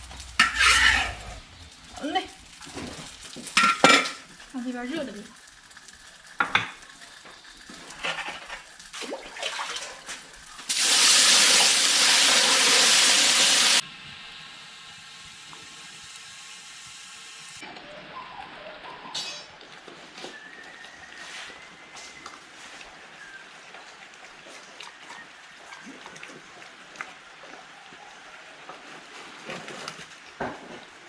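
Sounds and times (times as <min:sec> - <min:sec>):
running water rushing: 0:00.0 - 0:13.9
kitchen utensils clinking: 0:00.1 - 0:01.5, 0:03.5 - 0:04.3, 0:19.1 - 0:19.6.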